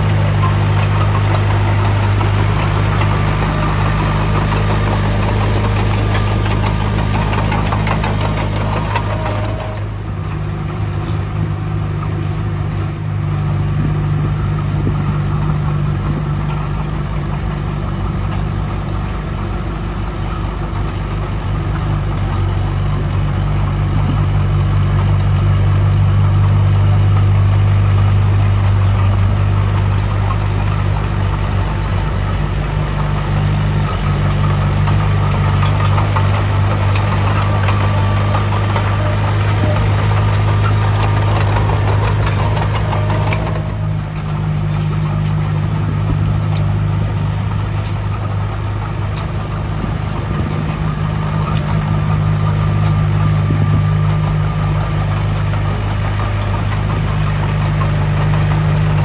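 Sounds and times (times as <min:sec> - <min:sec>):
high-pitched clatter: 0:00.0 - 0:10.0
heavy diesel engine running: 0:00.0 - 0:59.0.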